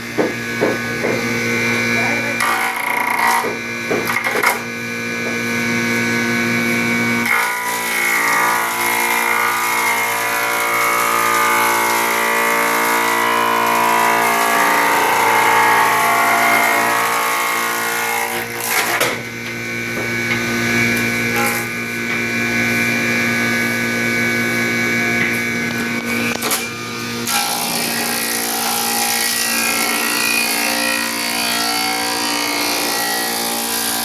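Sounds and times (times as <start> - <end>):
electric wood planer running: 0.0 - 34.0
knocks: 0.2 - 1.2, 3.4 - 4.6.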